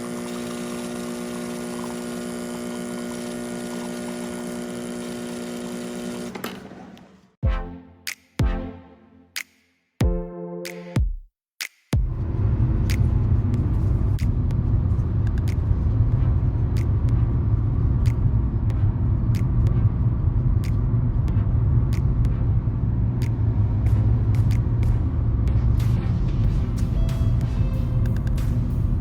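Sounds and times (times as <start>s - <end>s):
car engine rumble: 12.0s - 29.0s
road noise: 12.0s - 29.0s
sharp ticks: 15.2s - 15.7s.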